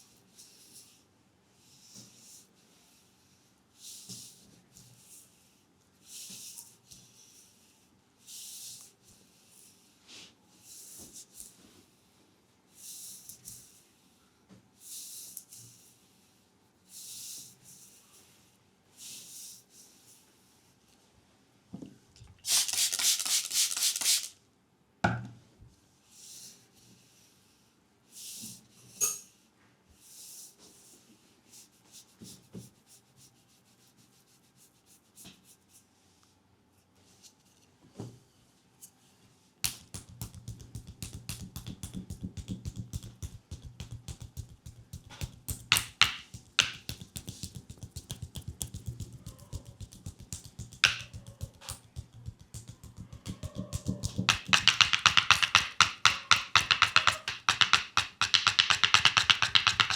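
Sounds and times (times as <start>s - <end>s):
percussive tapping massage strikes: 39.6s - 59.9s
soft rubbing: 39.9s - 54.8s.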